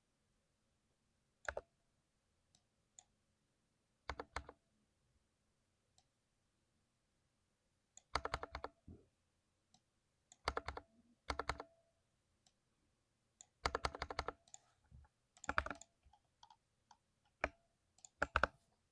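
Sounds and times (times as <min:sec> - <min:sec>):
mechanical keyboard typing: 0:04.1 - 0:04.6, 0:08.0 - 0:08.8, 0:10.4 - 0:11.7, 0:13.6 - 0:14.6, 0:15.4 - 0:16.6, 0:17.3 - 0:18.6.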